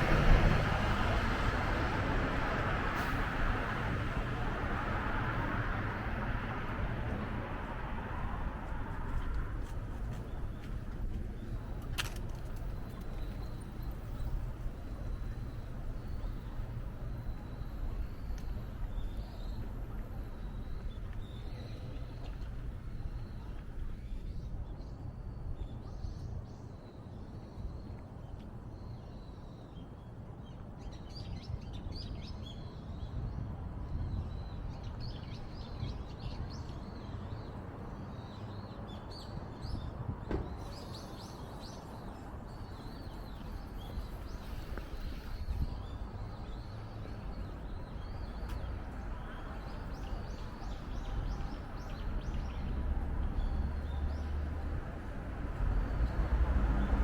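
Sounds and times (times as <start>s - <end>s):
city background rumble: 0.0s - 57.0s.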